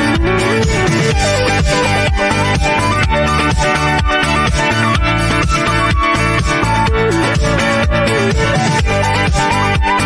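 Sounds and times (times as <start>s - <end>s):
upbeat electronic dance music: 0.0s - 10.0s.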